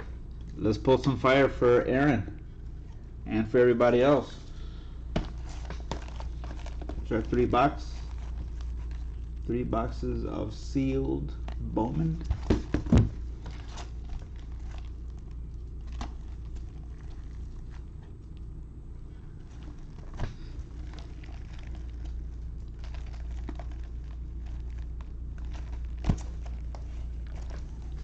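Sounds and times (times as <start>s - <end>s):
steady low hum: 0.0s - 28.0s
boxes rustling and tapping: 12.2s - 14.0s.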